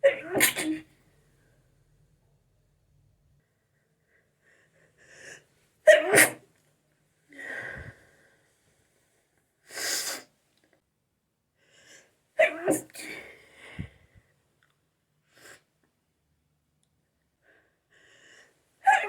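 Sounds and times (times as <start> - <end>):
person sneezing: 0.0 - 0.9, 5.9 - 6.4
hissing burst of breath: 9.7 - 10.3.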